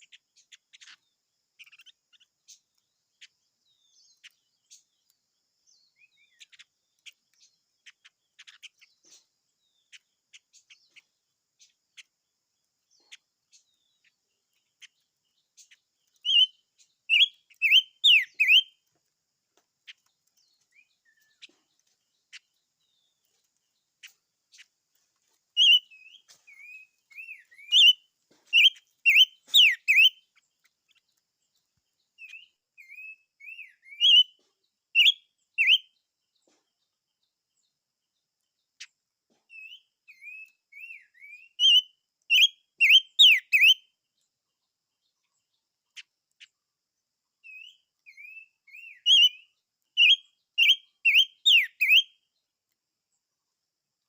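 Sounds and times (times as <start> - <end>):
soft bird clicks and chirps: 0.0 - 44.3, 45.1 - 46.7, 47.4 - 53.2
songbird whistled warbling: 16.2 - 18.8, 25.6 - 30.2, 32.2 - 34.3, 35.0 - 35.9, 39.6 - 43.8, 47.5 - 52.1.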